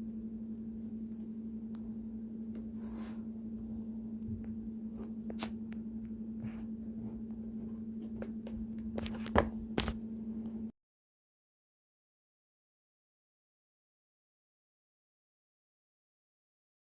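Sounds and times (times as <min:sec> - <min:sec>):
steady low hum: 0:00.0 - 0:10.7.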